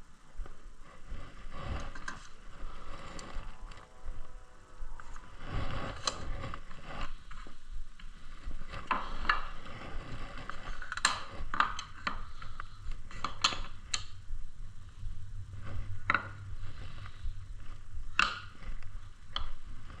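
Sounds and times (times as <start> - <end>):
low hum: 0.0 - 20.0
wooden parts and tools knocking: 16.0 - 16.5.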